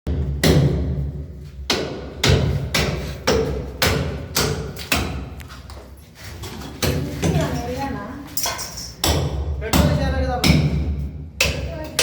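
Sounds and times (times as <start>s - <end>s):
hammer striking brickwork: 0.1s - 5.4s, 8.4s - 12.0s.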